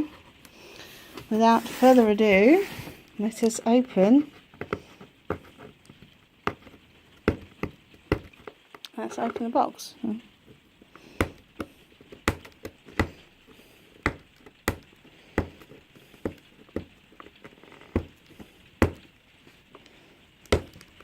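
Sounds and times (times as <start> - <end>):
cardboard box knocks and taps: 6.4 - 8.4, 11.2 - 13.2, 14.0 - 16.9, 17.8 - 18.2, 18.8 - 19.1, 20.5 - 20.8.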